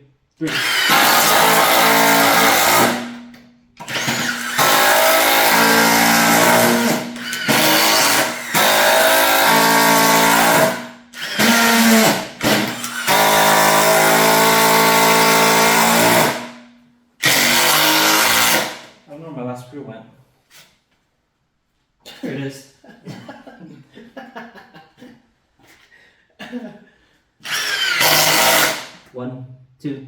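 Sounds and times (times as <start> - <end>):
impact drivers driving screws: 0.4 - 16.6, 17.2 - 19.0, 27.4 - 29.0.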